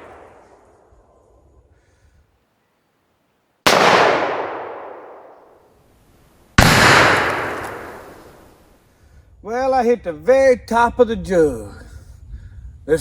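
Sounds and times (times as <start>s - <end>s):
pistol gunshots with echo: 3.7s - 5.7s, 6.6s - 8.4s.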